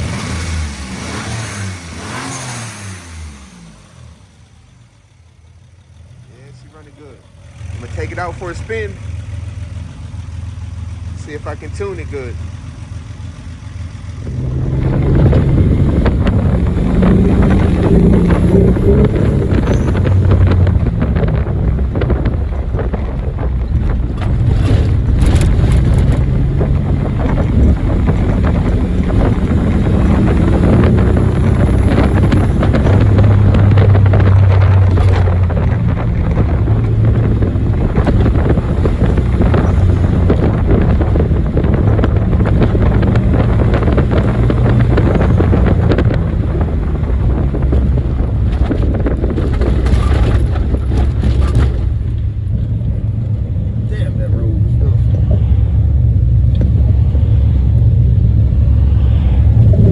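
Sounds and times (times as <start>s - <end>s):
car engine running: 0.0s - 59.9s
wind buffeting microphone: 14.2s - 59.9s.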